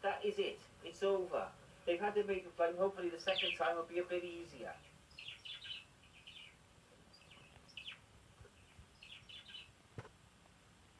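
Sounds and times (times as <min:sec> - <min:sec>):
budgerigars chirping: 0:03.0 - 0:09.8.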